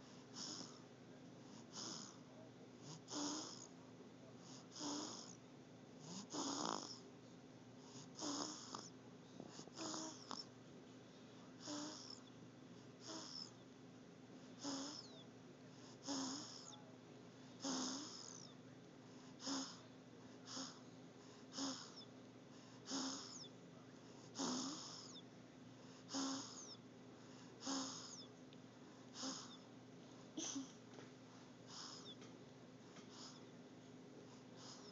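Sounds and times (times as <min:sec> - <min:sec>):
baby snoring: 0:00.0 - 0:00.8, 0:01.6 - 0:02.2, 0:02.8 - 0:03.7, 0:04.5 - 0:05.4, 0:06.0 - 0:07.0, 0:07.9 - 0:10.5, 0:11.6 - 0:12.3, 0:13.0 - 0:13.6, 0:14.6 - 0:15.2, 0:15.8 - 0:16.8, 0:17.6 - 0:18.6, 0:19.2 - 0:23.5, 0:24.2 - 0:25.2, 0:25.9 - 0:26.8, 0:27.5 - 0:28.3, 0:29.1 - 0:29.7, 0:30.4 - 0:30.8, 0:31.7 - 0:32.2, 0:33.1 - 0:33.4, 0:34.4 - 0:34.9.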